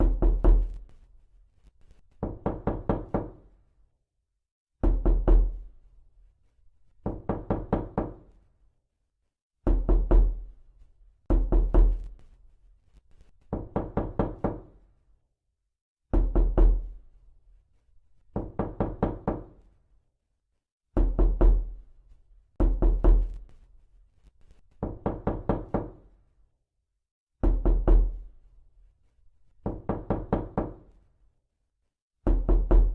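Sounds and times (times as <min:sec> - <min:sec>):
knuckles knocking on door: 0:02.2 - 0:03.4, 0:04.8 - 0:05.6, 0:07.0 - 0:08.2, 0:09.7 - 0:10.4, 0:11.3 - 0:12.0, 0:13.5 - 0:14.7, 0:16.2 - 0:16.9, 0:18.4 - 0:19.5, 0:22.6 - 0:23.4, 0:24.8 - 0:26.0, 0:27.4 - 0:28.2, 0:29.6 - 0:30.8, 0:32.3 - 0:32.9.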